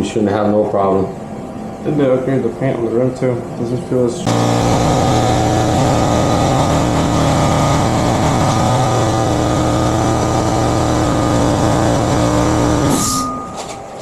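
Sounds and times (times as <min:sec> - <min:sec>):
air compressor motor running: 0:04.3 - 0:14.0.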